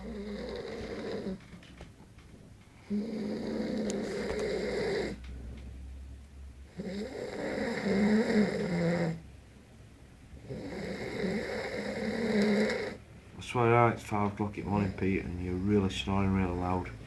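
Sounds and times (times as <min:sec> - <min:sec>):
man snoring loudly: 0:02.9 - 0:05.2, 0:06.8 - 0:09.2, 0:10.4 - 0:13.0.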